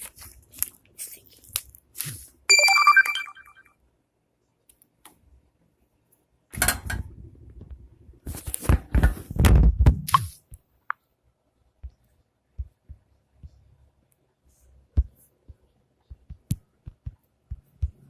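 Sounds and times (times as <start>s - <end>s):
high ringing tone: 2.5s - 3.7s.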